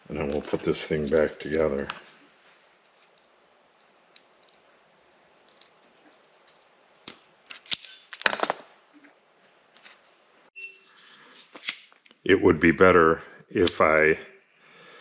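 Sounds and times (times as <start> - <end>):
clicks and scrapes of small tools: 5.4 - 8.5, 11.0 - 12.2.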